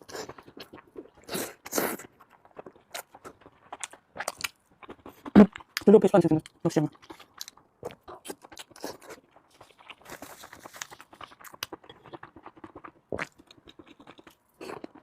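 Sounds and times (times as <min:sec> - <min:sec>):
person chewing crunchy food: 0:00.0 - 0:15.0.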